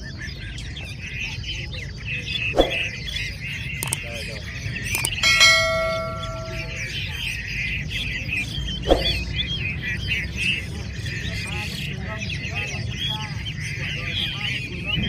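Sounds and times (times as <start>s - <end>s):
songbirds chirping and warbling: 0.0s - 15.0s
metallic clang: 5.0s - 6.9s.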